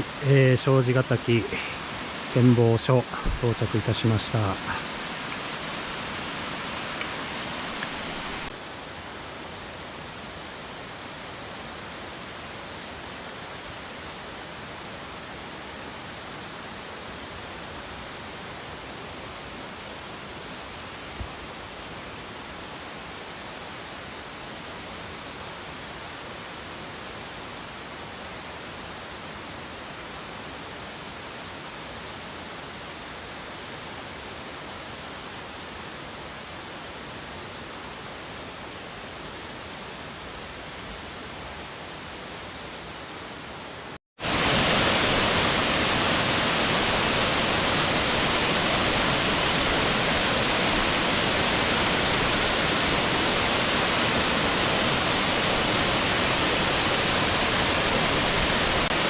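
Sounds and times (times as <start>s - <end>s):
waterfall rushing roar: 0.0s - 18.3s, 43.2s - 59.0s.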